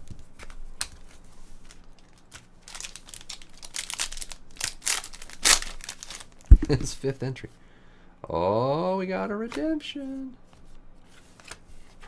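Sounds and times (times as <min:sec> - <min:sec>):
plastic wrapper crinkling: 0:00.4 - 0:06.9.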